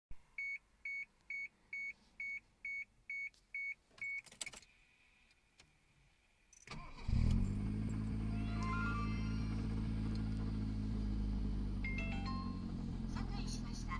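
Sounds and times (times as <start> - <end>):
car engine cranking and idling: 6.6 - 13.9
car warning beeper: 11.8 - 12.8.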